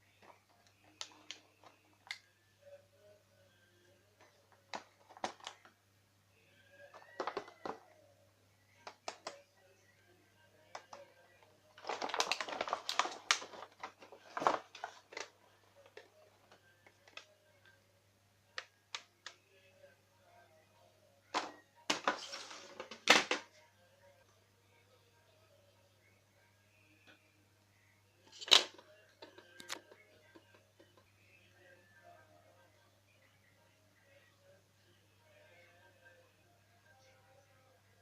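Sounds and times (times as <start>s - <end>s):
packaging rustling: 11.8s - 15.3s.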